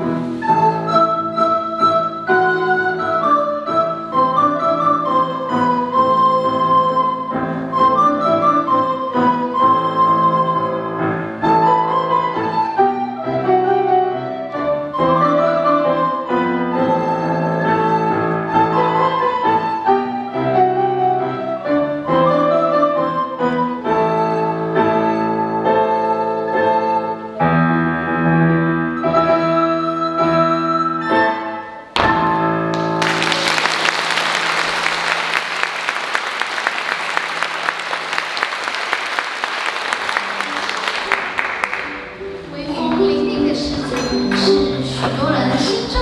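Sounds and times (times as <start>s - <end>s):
recorder ensemble playing: 0.2s - 27.4s.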